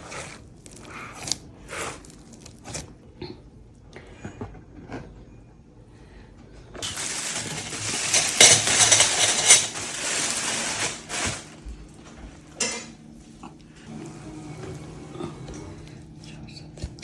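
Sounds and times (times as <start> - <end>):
utensils scraping against a bowl: 6.8 - 11.5.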